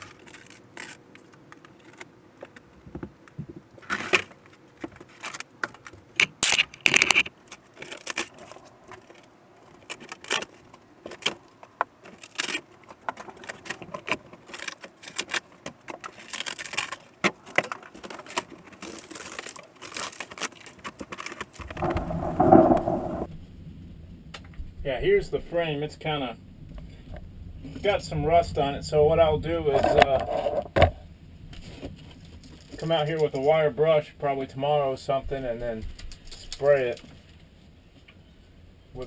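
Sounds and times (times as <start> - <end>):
ceiling board being torn down: 0.0 - 23.3
debris crackling and rattling: 0.0 - 23.3.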